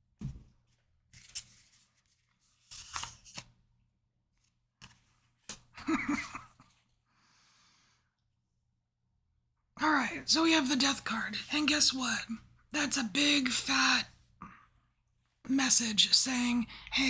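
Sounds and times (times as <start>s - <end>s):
cards being shuffled: 1.2s - 3.6s.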